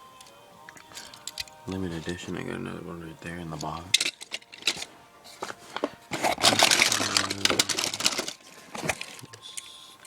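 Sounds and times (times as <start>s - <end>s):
packaging clicks: 3.6s - 9.7s
packaging crinkling: 4.2s - 9.5s.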